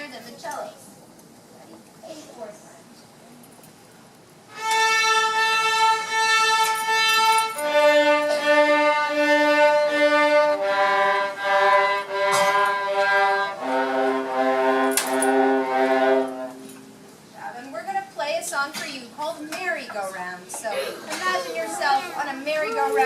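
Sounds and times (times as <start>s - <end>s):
violas bowing open strings: 4.5s - 16.9s.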